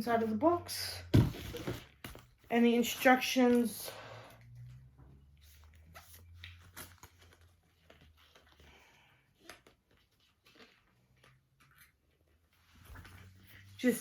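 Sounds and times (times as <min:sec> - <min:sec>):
paper and cardboard rustling: 0:01.2 - 0:03.7.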